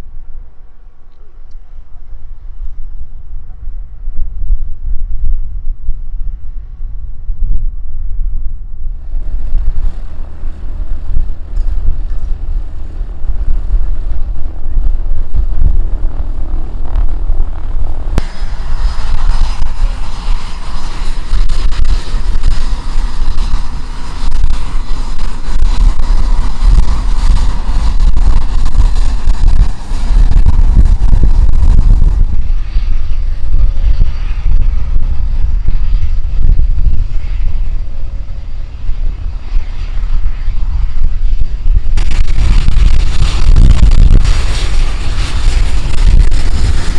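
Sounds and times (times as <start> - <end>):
airplane engine rumble: 0.0 - 46.9
faint high whine: 0.0 - 46.9
rushing sound: 2.4 - 46.9.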